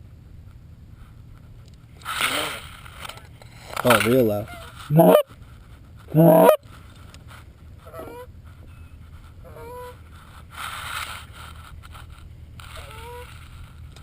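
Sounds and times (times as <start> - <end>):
soft rustle: 0.0 - 14.0
goose honking: 4.9 - 5.2, 6.1 - 6.6.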